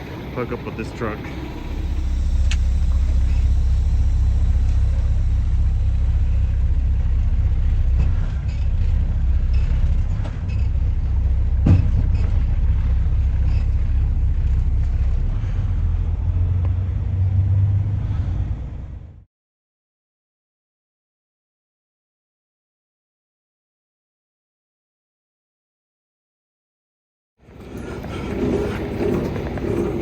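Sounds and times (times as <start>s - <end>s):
diesel truck engine idling: 0.0s - 19.2s.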